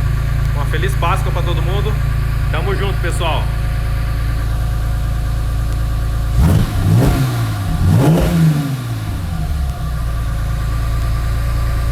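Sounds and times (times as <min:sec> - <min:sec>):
car engine idling and revving: 0:00.0 - 0:11.9.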